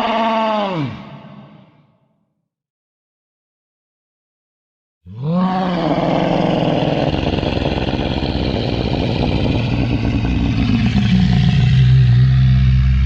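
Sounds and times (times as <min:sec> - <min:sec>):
creature roar: 0:00.0 - 0:01.8, 0:05.1 - 0:13.0
low rumbling growl: 0:05.1 - 0:13.0
steady low drone: 0:07.2 - 0:13.0.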